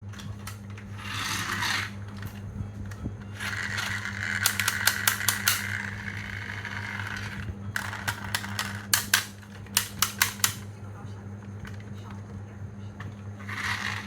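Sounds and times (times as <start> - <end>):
marbles rolling on track: 1.0 - 2.3, 3.2 - 10.4, 13.4 - 14.0
marbles clacking: 3.4 - 9.1.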